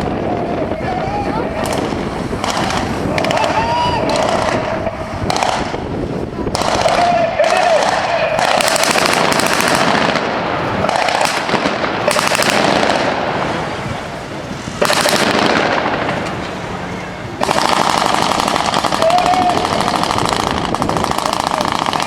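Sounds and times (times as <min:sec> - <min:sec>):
rapid automatic gunfire: 0:01.6 - 0:05.8, 0:06.5 - 0:13.3, 0:14.8 - 0:16.1, 0:17.4 - 0:22.0.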